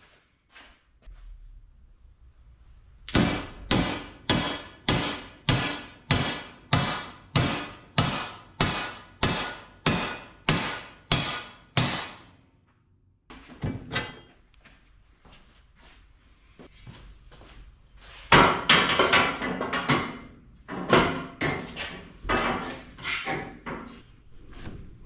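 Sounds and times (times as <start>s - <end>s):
hammer striking steel plate: 3.1s - 12.3s.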